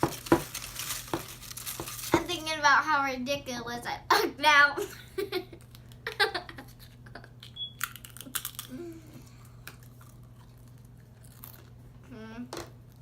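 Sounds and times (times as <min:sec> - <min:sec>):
steady low hum: 0:00.0 - 0:13.0
person chewing food: 0:07.7 - 0:12.0.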